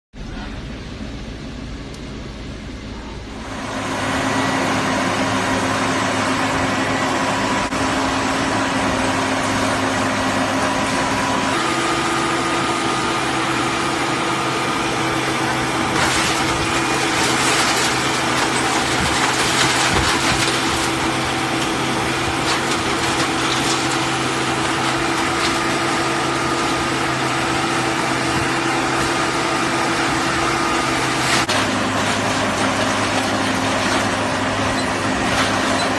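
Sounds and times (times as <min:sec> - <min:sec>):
hydraulic baler hum: 0:00.2 - 0:35.9
crackling and knocks: 0:15.9 - 0:25.9.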